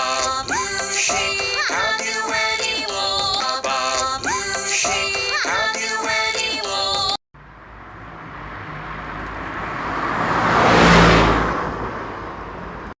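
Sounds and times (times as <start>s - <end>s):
sung nursery rhyme tune: 0.0s - 7.2s
vehicle passing by: 7.4s - 13.0s.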